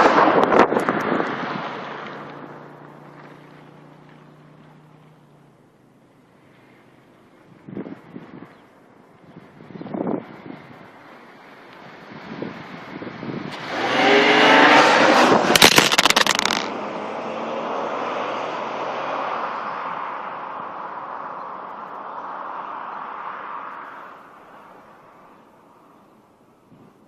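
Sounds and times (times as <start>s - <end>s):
car engine revving: 13.5s - 21.1s
phone falling over: 15.5s - 16.7s.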